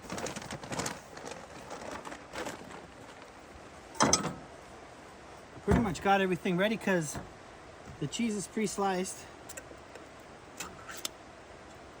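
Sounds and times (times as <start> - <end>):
rustles and light clicks: 0.0 - 4.5.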